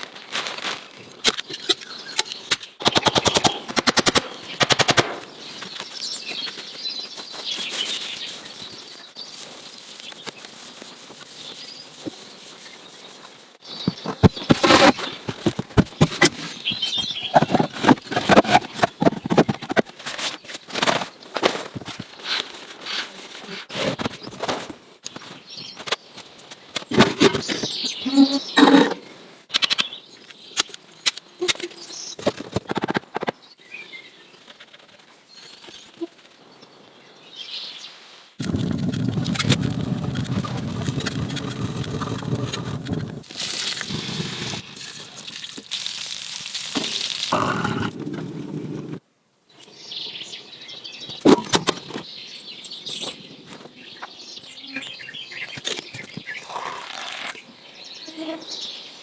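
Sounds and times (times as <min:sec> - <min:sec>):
birds chirping: 0:00.9 - 0:45.8, 0:46.8 - 0:59.0
faint bird chirps: 0:49.6 - 0:59.0.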